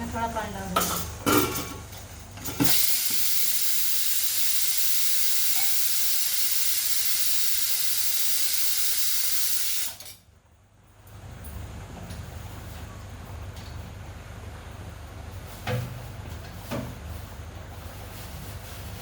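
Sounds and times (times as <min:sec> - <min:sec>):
steam hissing in hot pan: 0:02.5 - 0:10.1.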